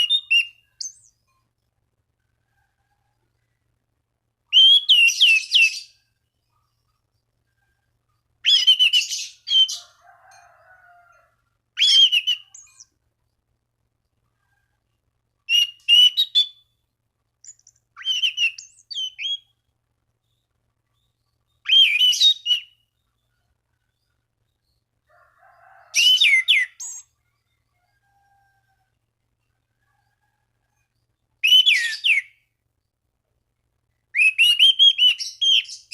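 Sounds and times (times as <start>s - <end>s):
thrush singing whistled notes: 0.0s - 1.5s, 4.5s - 6.1s, 8.4s - 9.8s, 11.8s - 13.0s, 15.5s - 16.8s, 17.4s - 19.6s, 21.5s - 22.9s, 25.9s - 27.1s, 31.4s - 32.5s, 34.2s - 35.9s.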